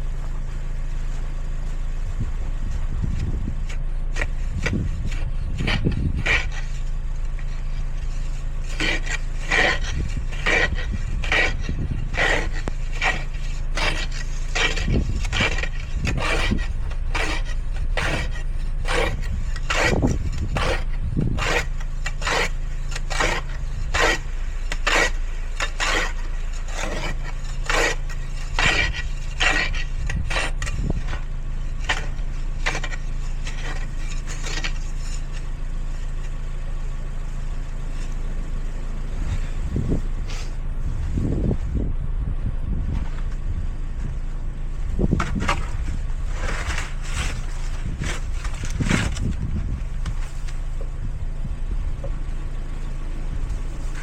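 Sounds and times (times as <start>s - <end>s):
rhythmic scraping strokes: 3.7s - 36.3s.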